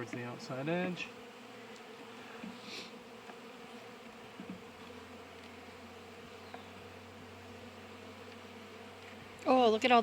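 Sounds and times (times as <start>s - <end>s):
bees buzzing: 0.0s - 10.0s
hive frames knocking: 4.3s - 5.5s.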